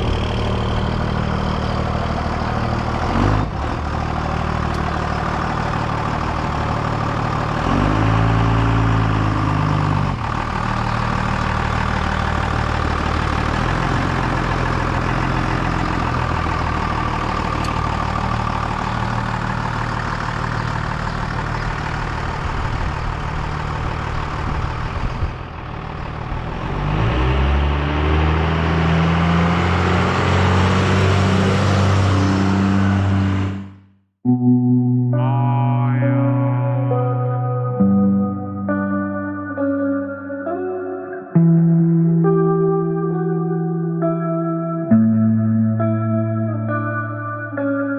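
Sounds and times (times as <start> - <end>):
tractor diesel engine revving: 0.0 - 33.9.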